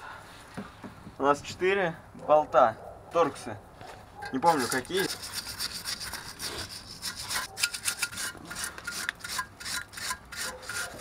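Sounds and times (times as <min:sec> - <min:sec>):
scraping and rubbing on metal: 0:04.2 - 0:11.0.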